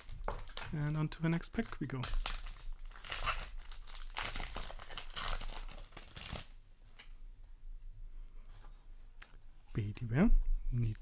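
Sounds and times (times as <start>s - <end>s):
card pack wrapper tearing: 0.0s - 6.6s.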